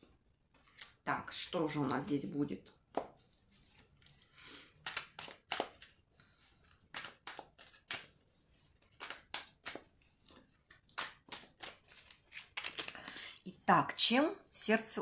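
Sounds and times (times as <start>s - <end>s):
cards snapping and sliding: 2.9s - 13.0s.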